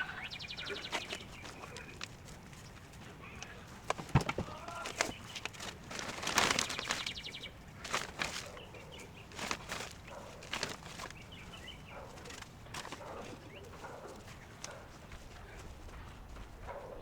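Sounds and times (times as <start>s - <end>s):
bird chirps: 0.0s - 3.8s, 6.5s - 10.4s, 11.0s - 12.4s, 13.0s - 15.6s
rustling of plant basket: 0.0s - 17.0s.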